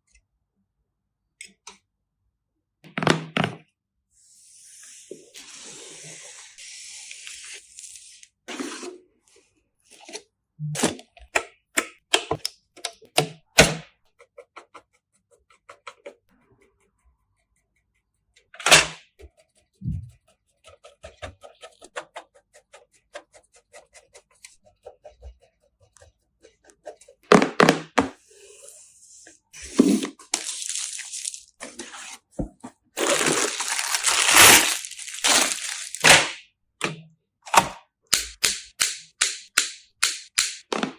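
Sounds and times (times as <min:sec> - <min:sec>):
rustling scrapes: 0:28.1 - 0:36.0
computer parts clicking and knocking: 0:37.6 - 0:40.9.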